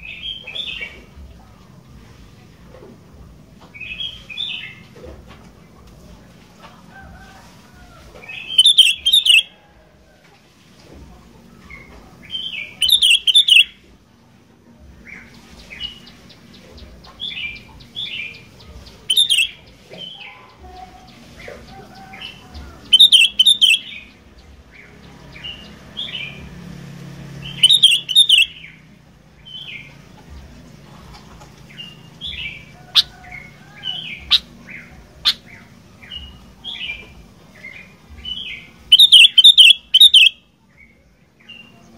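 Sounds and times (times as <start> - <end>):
bird singing: 0.0 - 1.4, 3.6 - 4.9, 8.2 - 9.7, 11.6 - 13.9, 15.0 - 41.9
soft bird chirps: 7.1 - 9.5, 11.6 - 13.9, 15.1 - 26.6, 27.4 - 28.8, 29.4 - 41.9.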